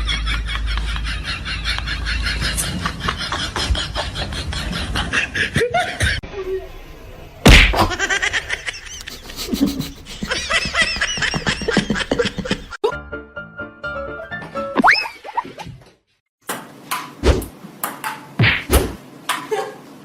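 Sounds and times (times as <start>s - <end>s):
laughter: 0.0s - 6.2s, 7.8s - 12.8s, 19.4s - 19.8s
loud smack: 7.5s - 7.9s, 18.4s - 19.0s
music: 12.8s - 14.8s.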